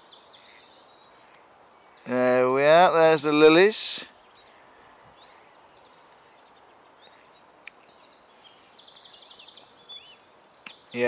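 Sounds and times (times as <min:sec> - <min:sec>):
faint outdoor hiss: 0:00.0 - 0:11.0
small birds chirping and singing: 0:00.0 - 0:11.0
faint click: 0:07.6 - 0:07.8.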